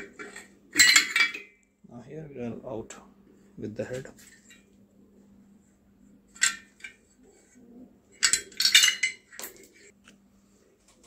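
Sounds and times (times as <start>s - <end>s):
small metal parts clinking: 0.0s - 1.6s, 8.2s - 9.9s.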